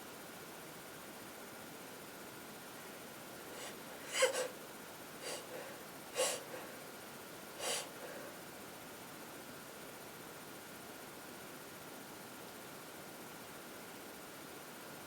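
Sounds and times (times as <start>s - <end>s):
congested nose sniffing: 3.5s - 4.6s, 5.2s - 6.9s, 7.6s - 8.4s.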